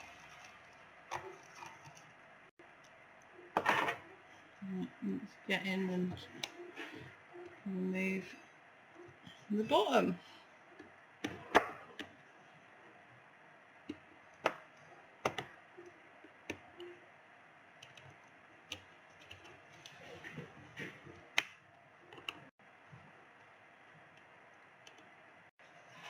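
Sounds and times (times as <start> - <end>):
sharp plastic clicks and taps: 15.2 - 15.6.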